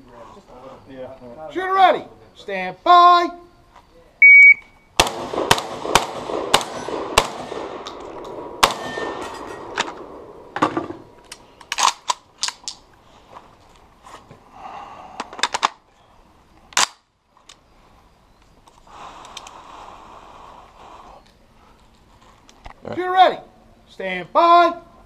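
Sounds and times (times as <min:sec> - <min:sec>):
shot timer beep: 0:04.2 - 0:04.8
gunshots: 0:05.0 - 0:11.1.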